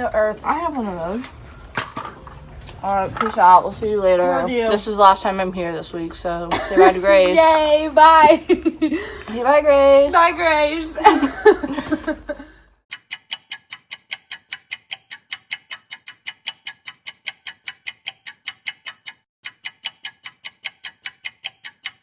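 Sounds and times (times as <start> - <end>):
clock-like ticking: 12.9 - 22.0.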